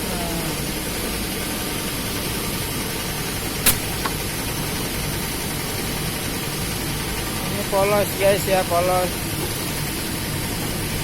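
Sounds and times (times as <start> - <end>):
offset printing press running: 0.0 - 11.0
sharp click: 3.6 - 4.2.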